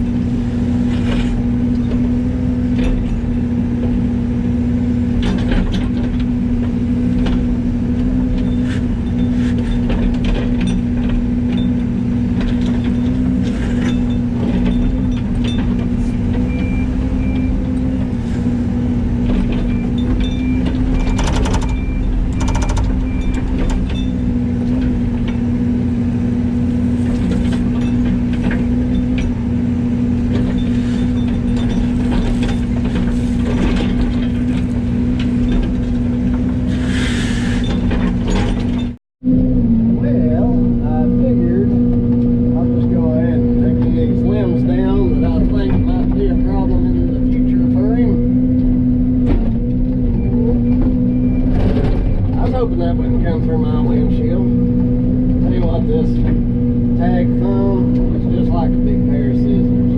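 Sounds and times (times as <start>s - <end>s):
diesel engine running: 0.0s - 59.9s.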